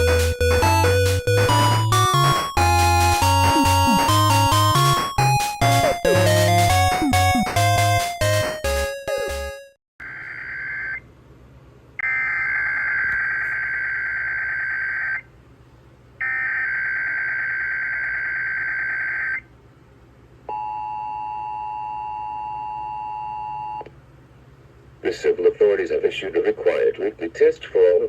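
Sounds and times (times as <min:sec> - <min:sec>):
harsh two-tone attention signal: 0:00.0 - 0:09.7.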